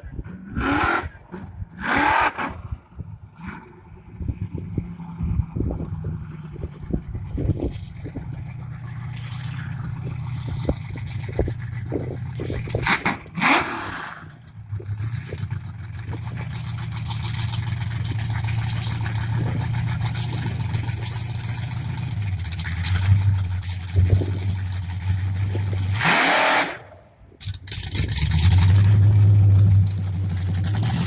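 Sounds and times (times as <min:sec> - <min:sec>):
engine running: 0:00.0 - 0:31.0
engine knocks: 0:04.8 - 0:13.6, 0:14.4 - 0:26.0.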